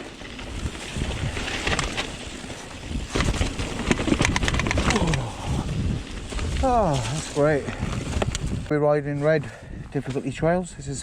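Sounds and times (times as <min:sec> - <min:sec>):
bike knocking and rattling: 0:00.0 - 0:08.7
bike tyre rumble: 0:00.0 - 0:11.0
wind buffeting microphone: 0:00.1 - 0:11.0.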